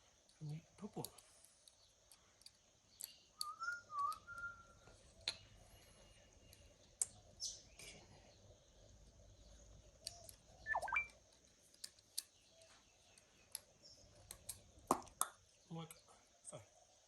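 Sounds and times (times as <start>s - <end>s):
short chirp: 10.7s - 11.1s.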